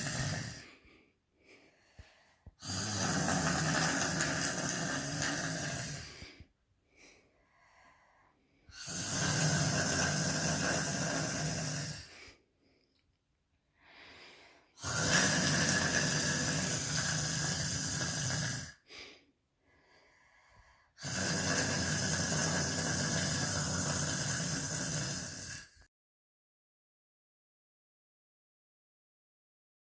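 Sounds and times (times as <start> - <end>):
woman snoring: 0.0 - 1.0, 2.0 - 12.4, 13.8 - 19.2, 20.0 - 25.9
faint breathing: 0.0 - 13.1, 13.7 - 25.9.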